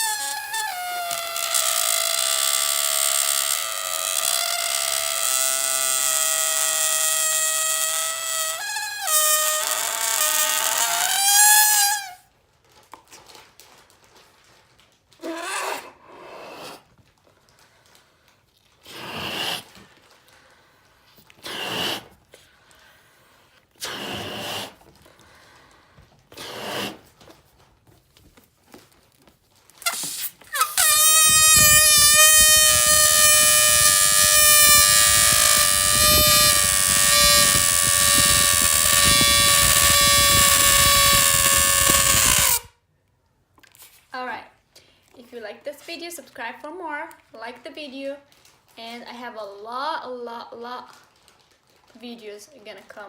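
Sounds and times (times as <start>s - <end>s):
air squealing out of balloon: 0.0s - 12.2s, 15.2s - 16.9s, 18.8s - 19.8s, 21.4s - 22.2s, 23.8s - 24.8s, 26.3s - 27.1s, 29.8s - 42.7s.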